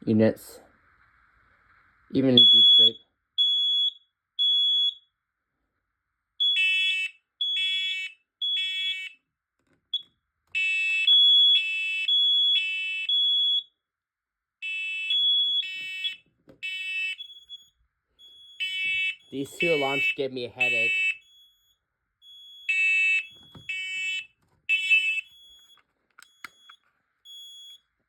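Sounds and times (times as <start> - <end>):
buzzy smoke alarm beeps: 2.4 - 5.1, 6.4 - 9.2, 10.0 - 13.8, 14.6 - 27.9
high smoke alarm beeps: 2.4 - 5.1, 6.4 - 9.2, 10.0 - 13.8, 14.6 - 27.9.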